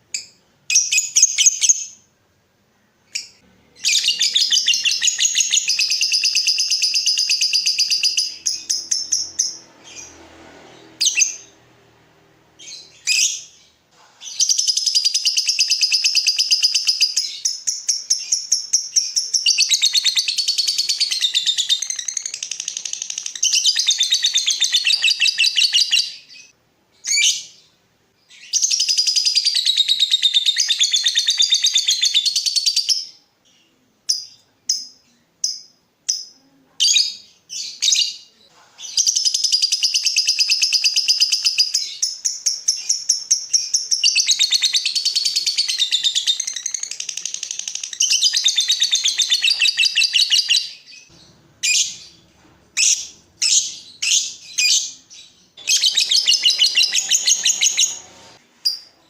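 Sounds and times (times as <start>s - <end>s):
lovebird high chirps: 0.1s - 2.1s, 3.1s - 10.2s, 11.0s - 11.6s, 12.6s - 27.7s, 28.3s - 52.2s, 52.8s - 59.0s
lovebird chattering trills: 55.6s - 58.1s.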